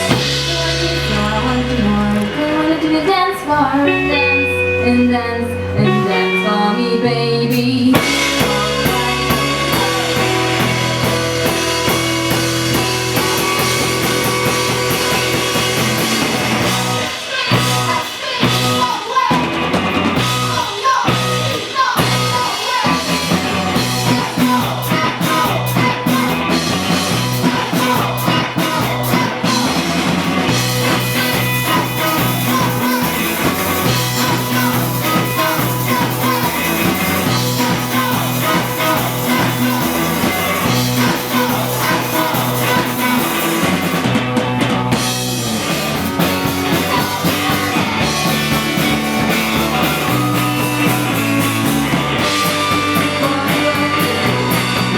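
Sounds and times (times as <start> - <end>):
person singing: 0.0 - 45.2, 45.9 - 54.9
bass line: 0.0 - 54.9
drums: 0.0 - 54.9
guitar: 0.0 - 54.9.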